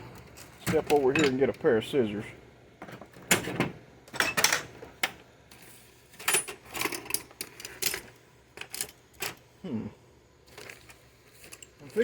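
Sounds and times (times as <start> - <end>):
hand tools clattering and clinking: 0.6 - 1.6.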